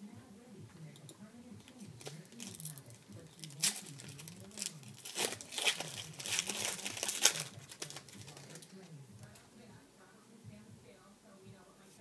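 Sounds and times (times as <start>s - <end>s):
wrapper tearing and crinkling: 2.0s - 8.8s.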